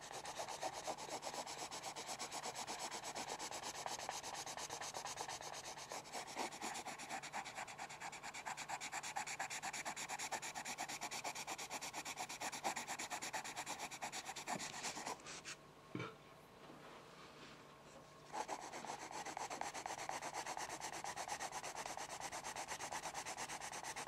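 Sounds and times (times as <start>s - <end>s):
pencil rubbing on paper: 0.0s - 15.6s, 18.3s - 24.0s
soft knock: 15.9s - 16.2s.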